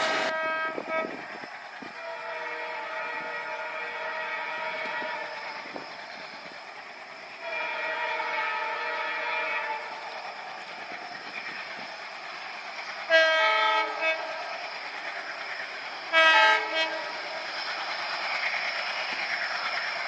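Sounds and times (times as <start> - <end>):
locomotive horn blasts: 0.0 - 1.2, 2.0 - 5.4, 7.4 - 9.9, 13.1 - 14.4, 16.1 - 17.1
train running noise: 0.0 - 20.0.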